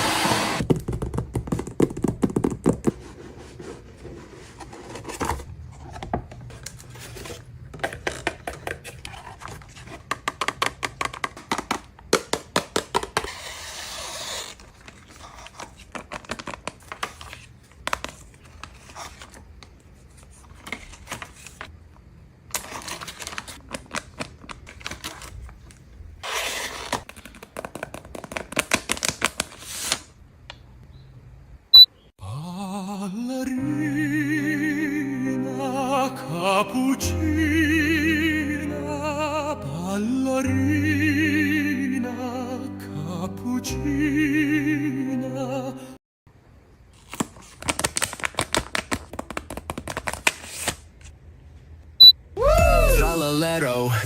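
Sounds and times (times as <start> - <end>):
paper rustling and crinkling: 2.8 - 11.9, 13.1 - 21.7, 22.5 - 30.2, 46.9 - 51.1.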